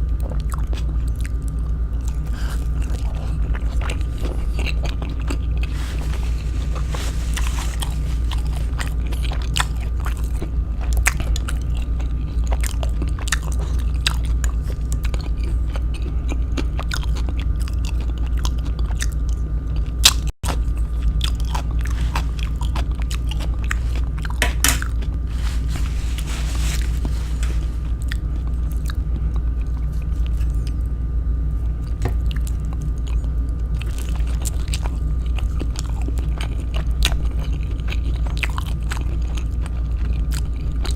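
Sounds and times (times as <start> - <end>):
crunchy chewing: 0.0 - 31.0, 31.6 - 40.9
low hum: 1.4 - 12.4, 20.4 - 35.1.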